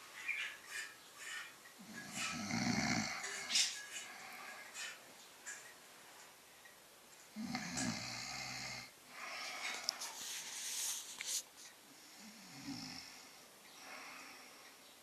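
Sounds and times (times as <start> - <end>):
low rattling snore: 1.8 - 5.0, 7.4 - 9.9, 12.2 - 14.6.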